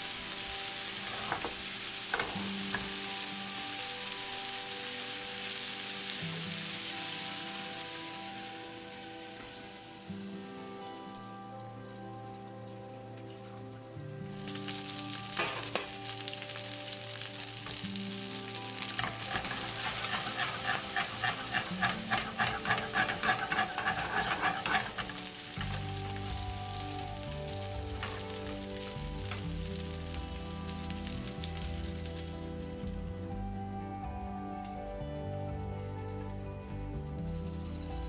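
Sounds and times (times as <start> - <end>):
food sizzling in a frying pan: 0.0 - 38.0
utensil scraping a pan: 1.1 - 1.6, 18.9 - 26.6, 27.9 - 28.6.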